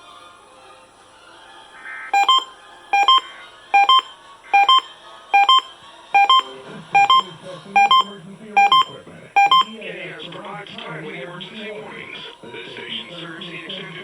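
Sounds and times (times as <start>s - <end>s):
electronic bleeps: 2.2s - 3.2s, 3.8s - 9.7s.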